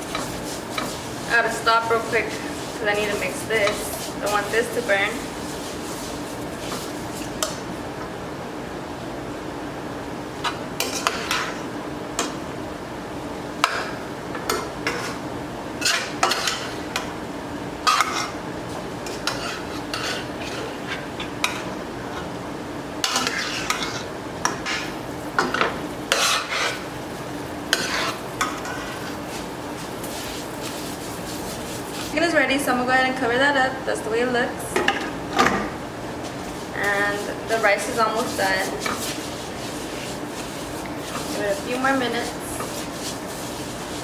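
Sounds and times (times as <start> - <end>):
utensil scraping food in a pan: 0.0 - 7.8, 10.4 - 11.6, 14.5 - 17.0, 17.9 - 22.3, 23.0 - 32.2, 36.2 - 44.0
steady low hum: 0.0 - 44.0.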